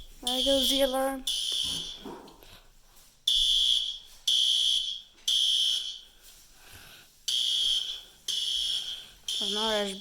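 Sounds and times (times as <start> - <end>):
fire alarm horn blasts: 0.2 - 2.0, 3.3 - 6.1, 7.3 - 10.0.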